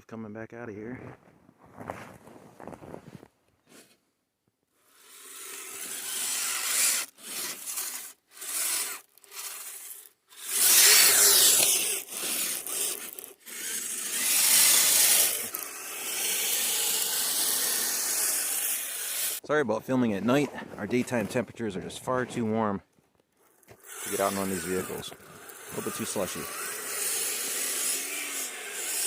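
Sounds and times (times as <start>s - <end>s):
rc car electric motor whirring: 4.8s - 19.4s, 23.3s - 29.0s
tyres churning through snow: 4.8s - 22.8s, 23.5s - 29.0s.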